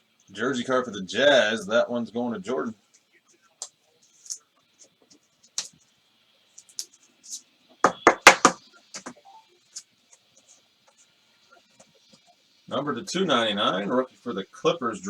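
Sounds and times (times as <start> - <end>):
louder knocks on table: 7.9 - 8.6.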